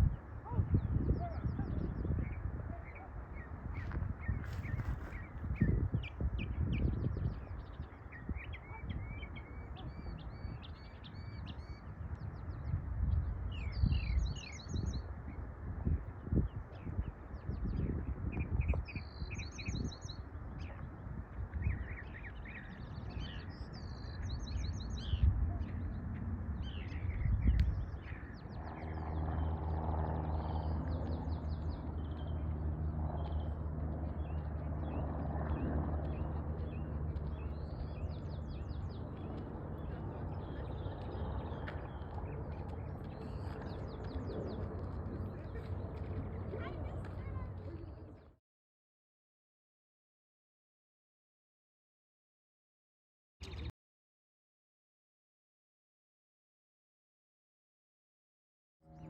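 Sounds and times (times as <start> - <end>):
small birds chirping: 0.0 - 15.1, 16.1 - 48.4, 53.4 - 53.7.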